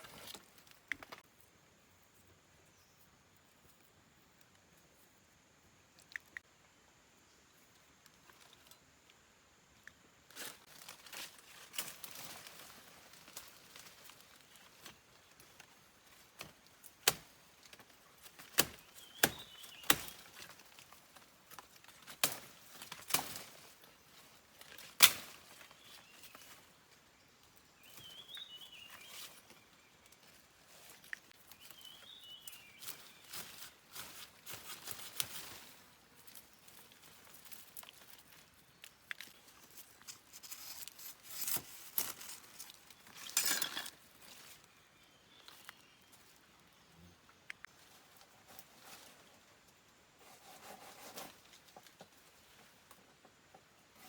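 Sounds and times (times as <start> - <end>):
rustling and handling noises: 27.8 - 44.8.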